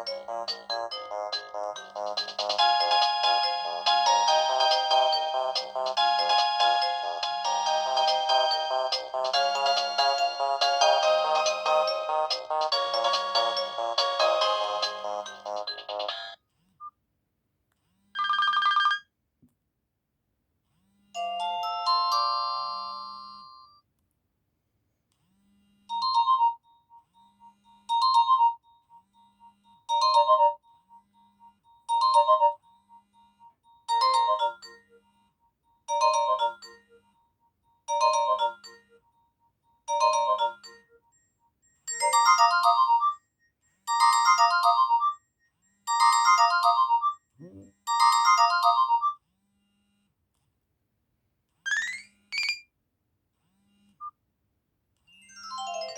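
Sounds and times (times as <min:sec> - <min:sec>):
phone ringtone melody: 0:00.0 - 0:16.4, 0:18.2 - 0:19.0, 0:27.4 - 0:32.7, 0:33.3 - 0:34.9, 0:35.9 - 0:36.9, 0:37.9 - 0:39.0, 0:39.9 - 0:40.9, 0:41.9 - 0:43.2, 0:43.9 - 0:45.2, 0:45.9 - 0:49.2, 0:55.3 - 0:55.9.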